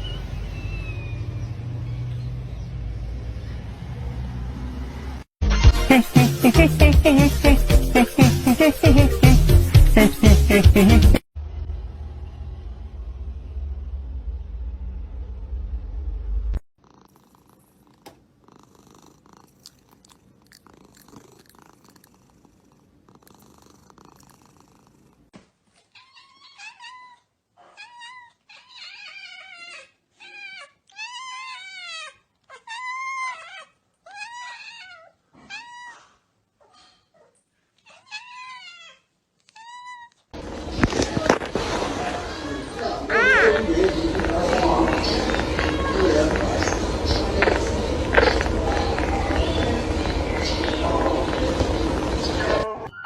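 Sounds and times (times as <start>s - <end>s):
cat meowing: 37.9s - 40.2s, 42.2s - 52.9s
faint noise: 40.4s - 53.0s.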